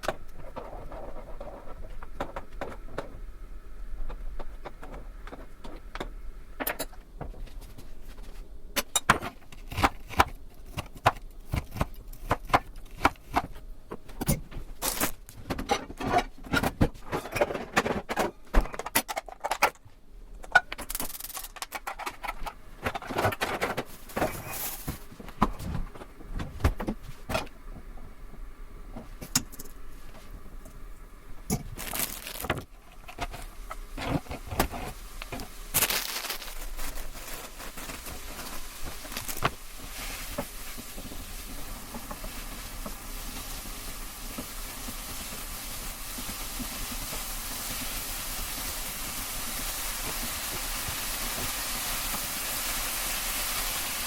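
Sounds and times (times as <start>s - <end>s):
rustling and scraping: 0.0s - 3.3s, 7.0s - 8.6s, 20.8s - 30.4s, 31.6s - 43.5s.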